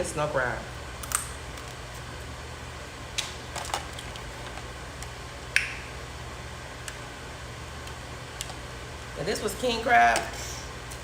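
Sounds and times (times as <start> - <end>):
crab shells cracking: 1.0 - 1.8.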